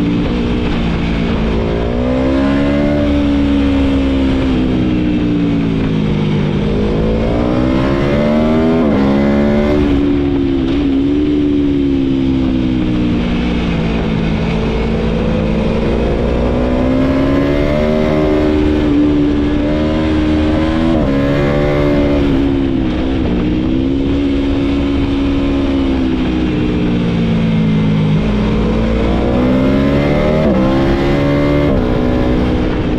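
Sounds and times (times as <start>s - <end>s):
motorcycle engine revving: 0.0s - 32.9s.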